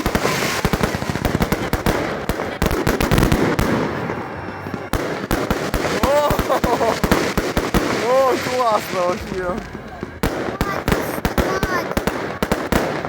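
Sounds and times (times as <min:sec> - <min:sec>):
fireworks cracking and banging: 0:00.0 - 0:13.0.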